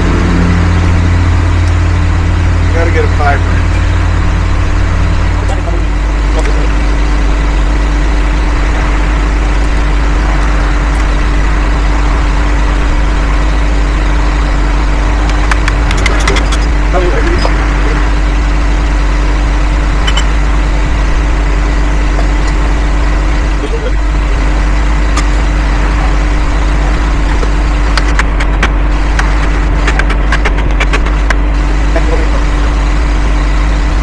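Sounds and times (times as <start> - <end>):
engine idling: 0.0 - 34.0.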